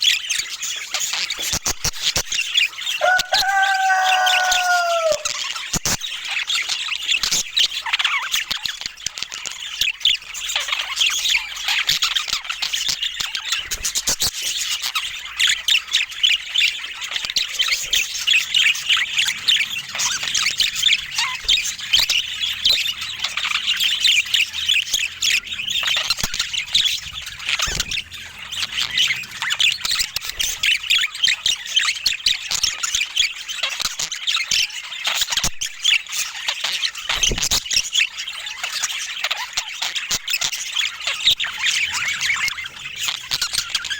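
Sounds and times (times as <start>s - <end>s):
budgerigars chattering and chirping: 0.0s - 43.9s
budgerigar squawks: 3.0s - 5.4s.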